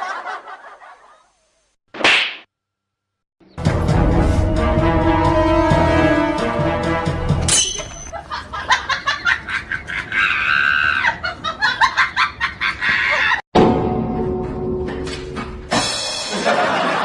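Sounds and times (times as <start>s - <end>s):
comic background music: 3.6s - 7.6s.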